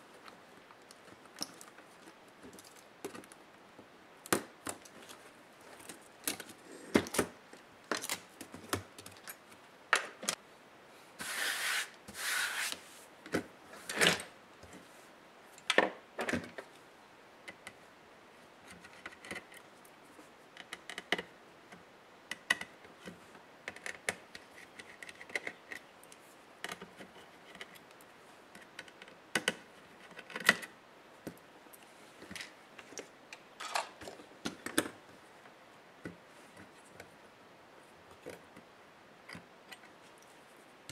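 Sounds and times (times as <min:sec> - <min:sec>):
plastic parts clicking and knocking: 0:20.6 - 0:21.3, 0:22.3 - 0:25.9, 0:28.5 - 0:31.4, 0:32.2 - 0:35.0.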